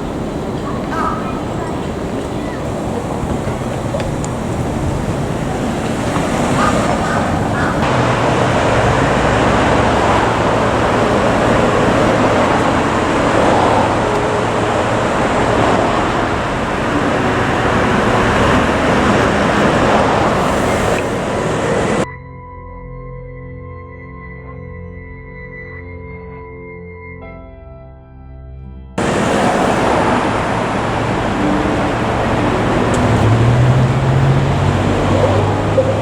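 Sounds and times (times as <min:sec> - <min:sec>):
road traffic noise: 0:00.0 - 0:22.1, 0:29.0 - 0:36.0
soft music: 0:07.9 - 0:36.0.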